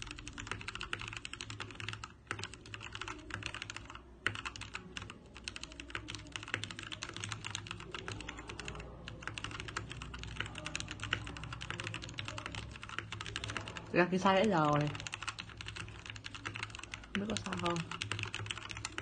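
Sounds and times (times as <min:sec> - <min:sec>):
fast typing on keyboard: 0:00.0 - 0:19.0.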